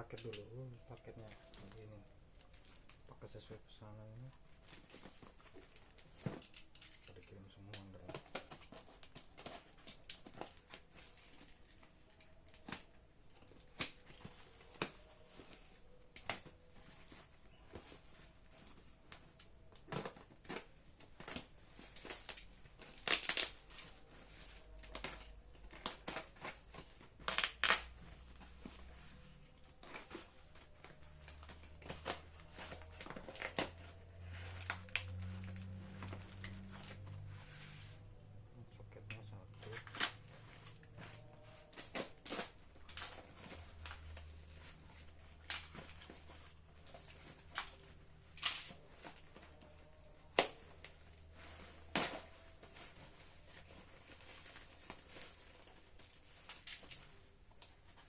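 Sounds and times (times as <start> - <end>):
plastic packaging crinkling and tearing: 0.0 - 38.0, 38.6 - 58.0.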